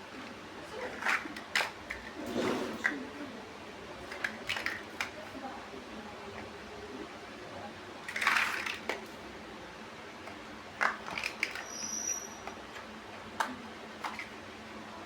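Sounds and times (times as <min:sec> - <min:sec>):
plastic bricks clicking together: 0:04.1 - 0:05.1, 0:08.1 - 0:09.0, 0:10.8 - 0:11.6.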